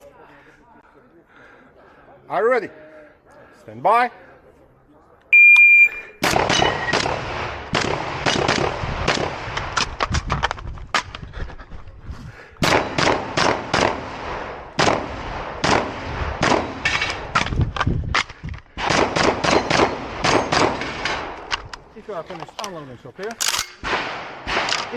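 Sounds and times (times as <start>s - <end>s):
shotgun shots: 6.2s - 10.0s, 12.6s - 17.5s, 18.8s - 21.4s, 23.4s - 24.9s.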